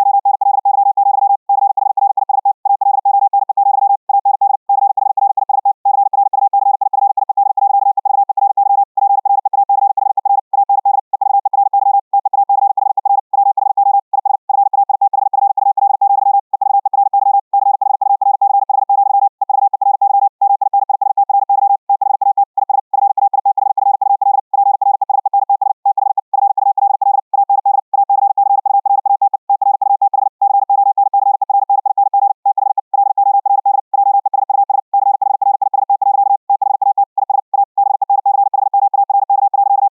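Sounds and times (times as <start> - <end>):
morse code tone: 0.0 - 14.7, 30.4 - 39.9.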